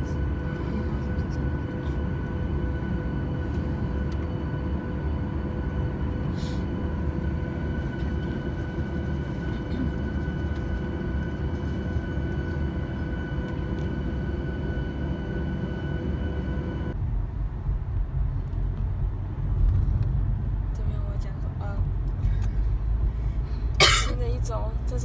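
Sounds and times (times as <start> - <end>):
whining hum: 0.0 - 20.0
vehicle rumble from inside: 5.6 - 13.9, 16.9 - 25.0.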